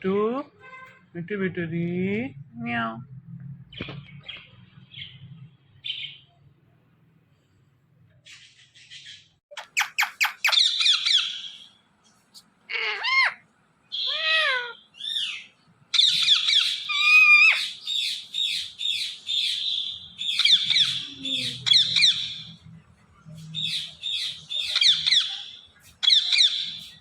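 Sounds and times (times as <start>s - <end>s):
parrot screeching and chattering: 8.4s - 11.8s, 12.7s - 22.6s, 23.6s - 27.0s.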